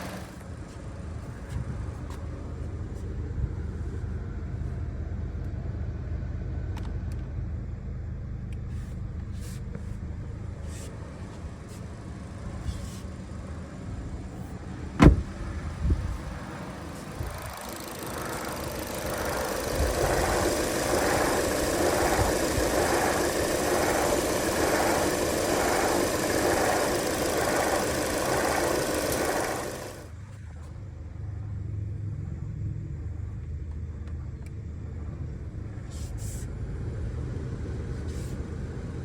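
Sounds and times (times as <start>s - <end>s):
ac compressor whirring: 0.0s - 1.3s, 14.3s - 30.2s
car engine idling: 0.0s - 30.6s.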